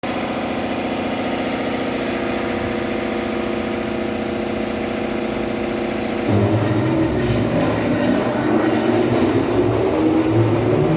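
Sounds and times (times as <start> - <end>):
machine motor hum: 2.3 - 10.9.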